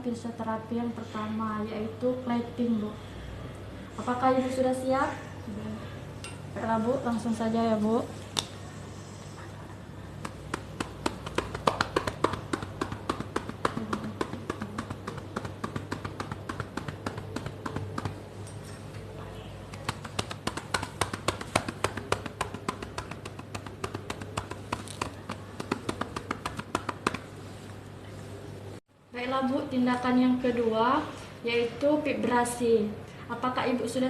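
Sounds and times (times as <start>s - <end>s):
cupped hands clapping on back: 10.2s - 18.2s, 19.7s - 27.3s.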